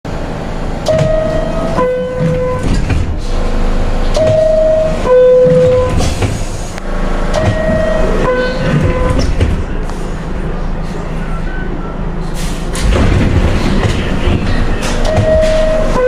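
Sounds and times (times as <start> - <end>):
train rumble: 0.1 - 16.0
train door chime: 0.9 - 3.0, 4.1 - 6.2, 7.4 - 9.4, 14.5 - 16.0.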